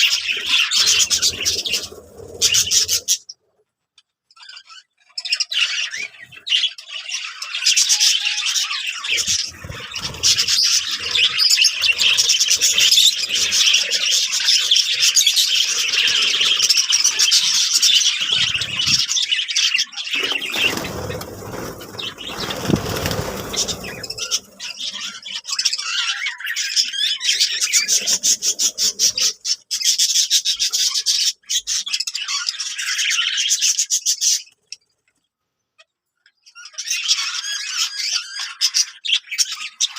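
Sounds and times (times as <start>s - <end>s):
budgerigars chattering: 4.4s - 33.7s.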